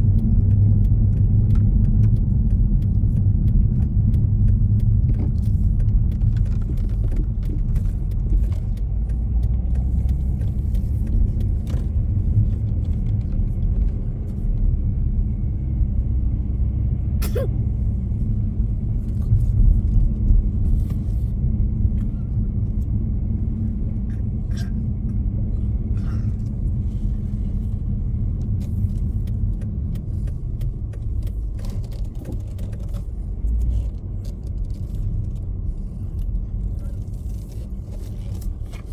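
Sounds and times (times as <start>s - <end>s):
faint clicks and ticks: 0.0s - 14.7s, 26.3s - 38.9s
road vehicle rumble: 0.0s - 38.9s.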